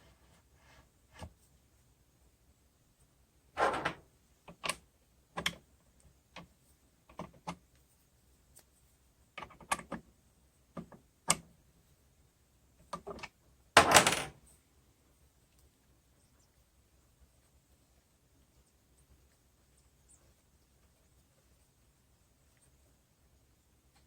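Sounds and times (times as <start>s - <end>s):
objects clattering: 3.6s - 4.0s.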